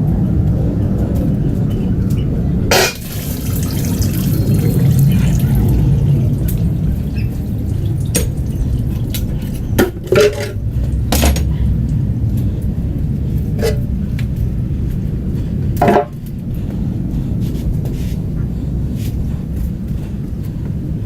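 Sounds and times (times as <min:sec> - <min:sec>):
steady low hum: 0:00.0 - 0:21.0
metal parts clinking and clanking: 0:09.2 - 0:11.5.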